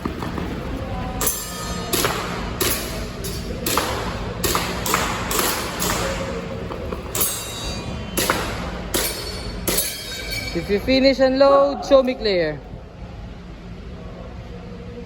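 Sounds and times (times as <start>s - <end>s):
metallic ringing ping: 1.2s - 6.4s, 7.1s - 10.9s.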